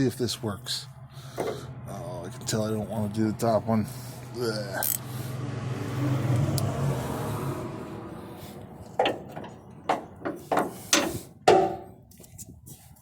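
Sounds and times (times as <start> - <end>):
hand tools knocking on metal: 9.0 - 12.0.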